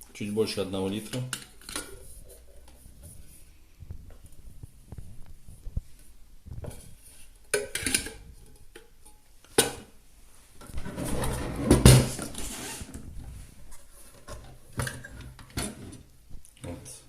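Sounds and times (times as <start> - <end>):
metal kettle clinking and rattling: 7.5 - 8.8.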